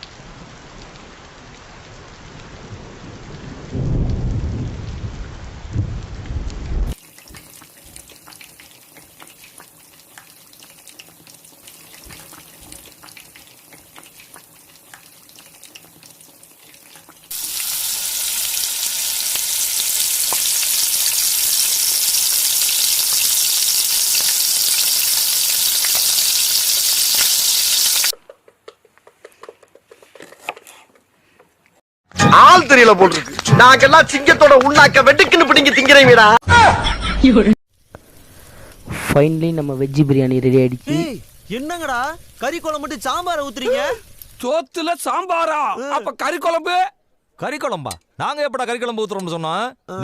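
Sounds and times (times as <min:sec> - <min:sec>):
low rumble of thunder: 0:02.7 - 0:06.9
food sizzling in a pot: 0:06.9 - 0:28.2, 0:37.7 - 0:44.4.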